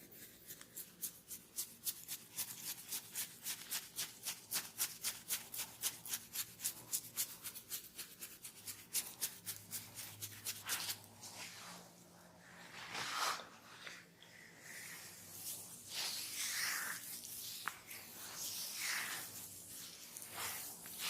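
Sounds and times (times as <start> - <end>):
hands rubbing or patting head: 15.4 - 21.0.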